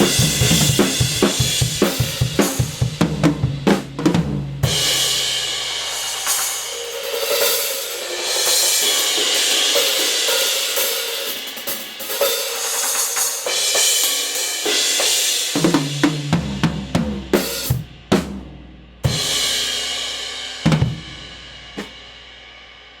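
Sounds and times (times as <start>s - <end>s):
drum hits: 20.6s - 22.0s.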